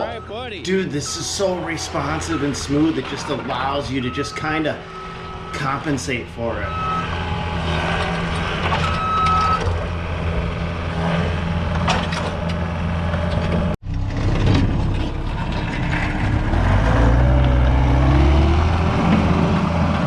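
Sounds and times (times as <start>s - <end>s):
reverse alarm beep: 0.0s - 3.1s, 3.8s - 5.8s, 6.6s - 7.1s
diesel engine under load: 0.0s - 20.0s.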